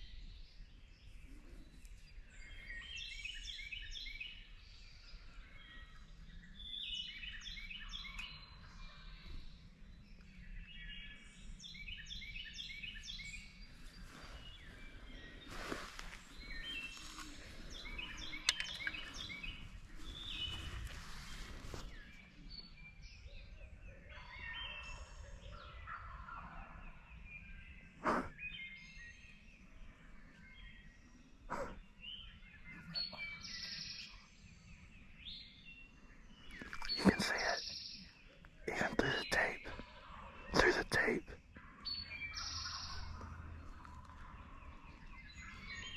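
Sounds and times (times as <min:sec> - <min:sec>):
songbirds chirping and singing: 0:00.0 - 0:45.9
sharp clicks: 0:18.4 - 0:19.1.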